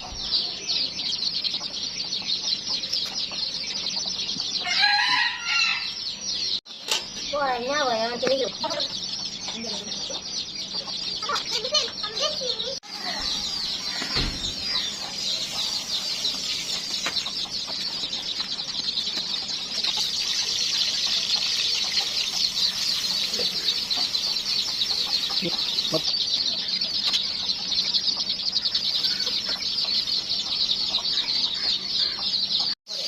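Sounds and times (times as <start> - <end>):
chickens chirping and clucking: 0.0 - 33.0.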